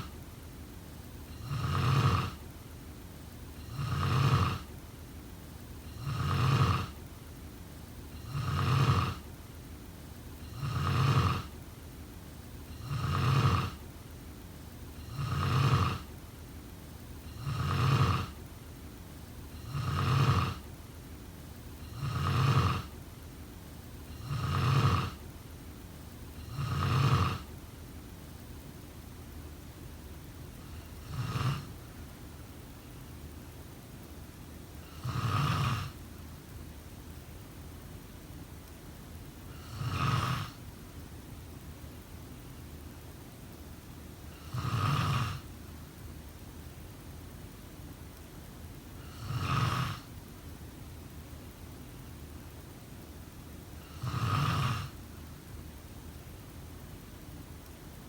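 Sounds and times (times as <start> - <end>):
person snoring: 1.3 - 2.4, 3.6 - 4.7, 5.9 - 7.0, 8.2 - 9.2, 10.4 - 11.5, 12.7 - 13.8, 15.0 - 16.1, 17.3 - 18.4, 19.6 - 20.6, 21.8 - 22.9, 24.1 - 25.2, 26.4 - 27.5, 30.6 - 31.8, 34.8 - 36.0, 39.5 - 40.6, 44.3 - 45.4, 49.0 - 50.1, 53.8 - 55.0.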